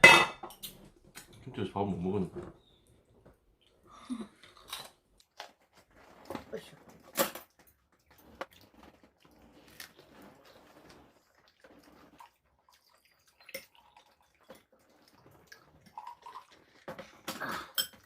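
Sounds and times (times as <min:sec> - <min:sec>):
liquid splashing: 0:07.0 - 0:17.2.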